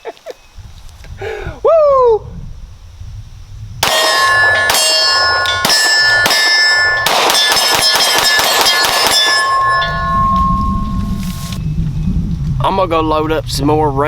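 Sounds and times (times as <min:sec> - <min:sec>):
pistol shots: 0:03.8 - 0:09.6
steel targets ringing: 0:03.8 - 0:11.6.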